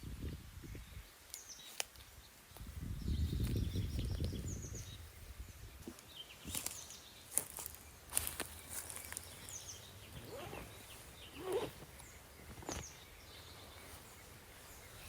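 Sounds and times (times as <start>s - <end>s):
small birds chirping: 0.6s - 15.0s.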